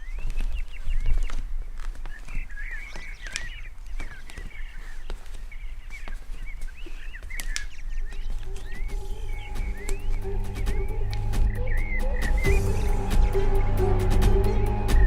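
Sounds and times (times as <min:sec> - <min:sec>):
birds chirping: 0:00.0 - 0:15.0
low musical drone: 0:08.8 - 0:15.0.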